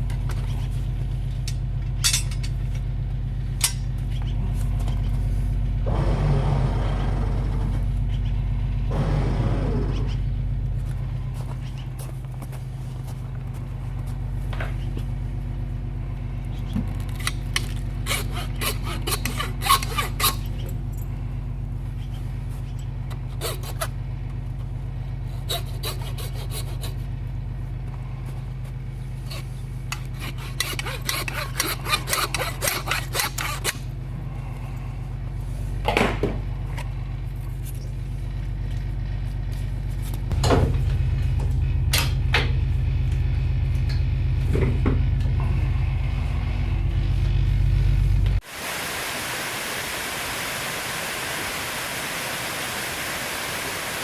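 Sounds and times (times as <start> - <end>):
engine idling: 0.0 - 48.5
machine hum: 0.0 - 54.0
rapid rasping strokes: 29.3 - 33.8.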